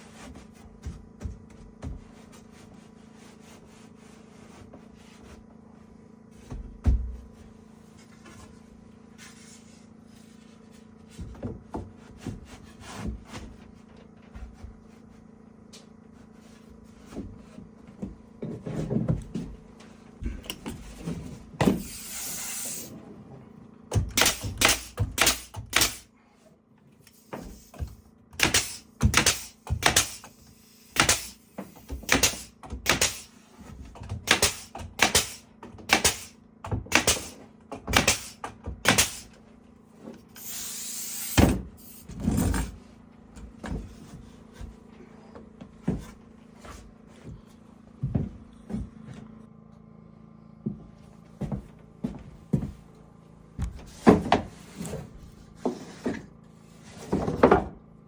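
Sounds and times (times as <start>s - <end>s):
hammer driving nails into wood: 23.9s - 26.1s, 27.3s - 33.3s, 34.2s - 39.4s.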